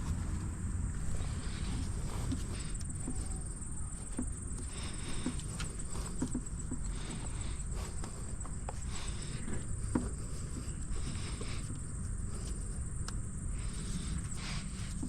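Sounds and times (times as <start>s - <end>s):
steady low rumble: 0.0s - 15.0s
hand tools clicking and tapping: 1.7s - 13.2s.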